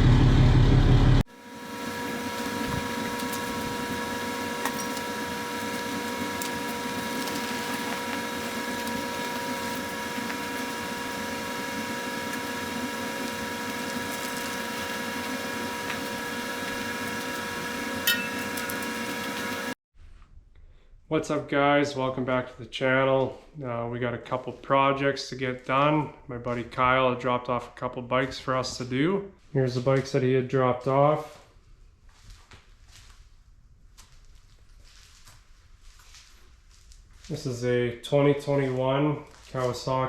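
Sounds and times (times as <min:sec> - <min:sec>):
steady mechanical hum: 0:00.0 - 0:19.8.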